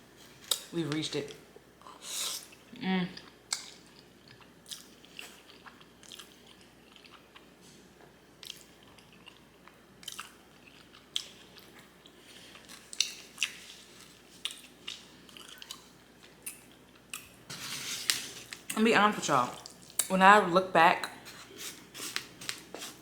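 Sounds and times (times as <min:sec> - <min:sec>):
chewing noodles: 0:03.2 - 0:07.5, 0:08.4 - 0:17.4.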